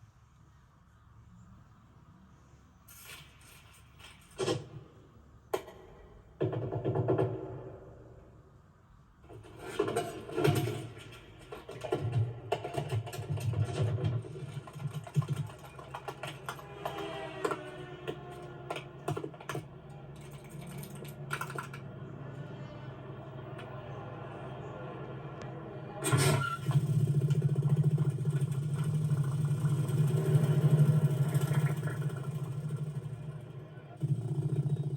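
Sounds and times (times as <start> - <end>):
film score music: 13.8 - 34.7.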